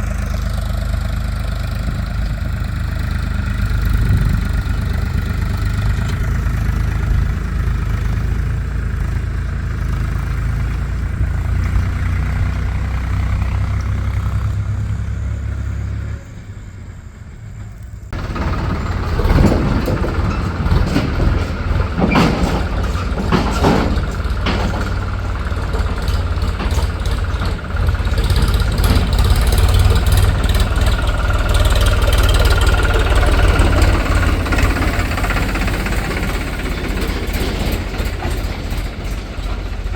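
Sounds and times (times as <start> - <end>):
heavy diesel engines running: 0.0 - 39.9
knocks and clatters: 17.6 - 39.9.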